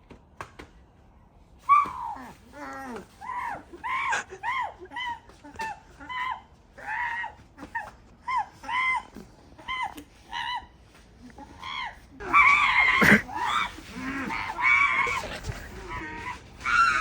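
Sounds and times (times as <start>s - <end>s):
high-pitched yelping cries: 3.4s - 5.2s, 11.7s - 17.0s.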